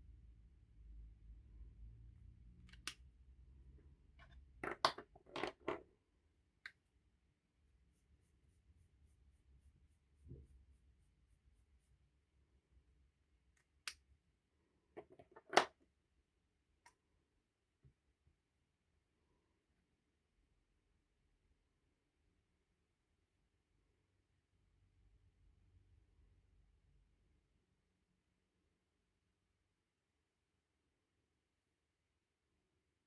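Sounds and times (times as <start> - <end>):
pens tapping on a desk: 4.2 - 5.8.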